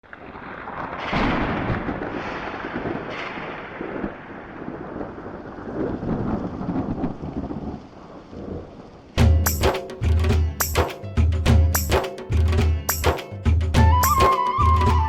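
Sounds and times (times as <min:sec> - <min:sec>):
rain falling: 0:00.0 - 0:15.0
thunder rumbling: 0:00.1 - 0:10.3.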